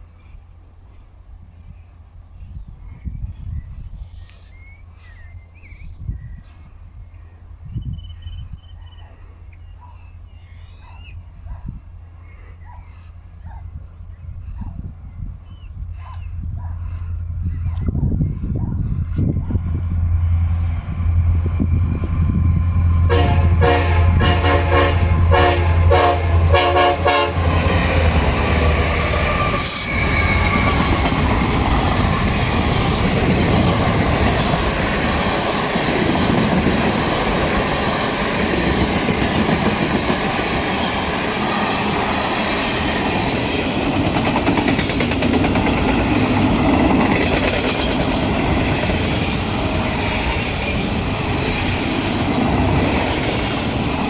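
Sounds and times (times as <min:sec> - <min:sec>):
locomotive air horn blasts: 0:23.1 - 0:27.8
train wheels clattering on rails: 0:27.5 - 0:54.0.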